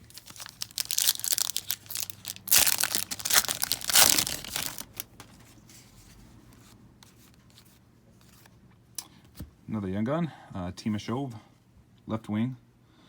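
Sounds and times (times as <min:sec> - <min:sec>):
wrapper tearing and crinkling: 0:00.0 - 0:05.2.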